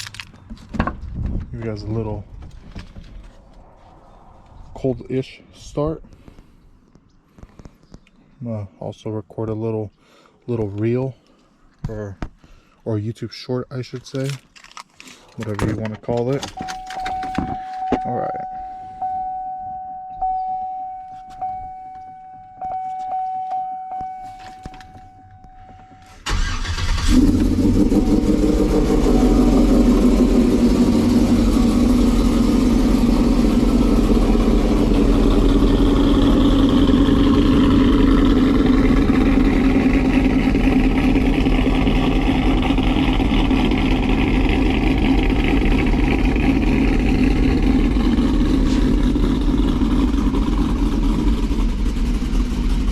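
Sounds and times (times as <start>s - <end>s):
electronic tone: 16.6s - 26.2s
truck engine starting and idling: 26.0s - 52.9s.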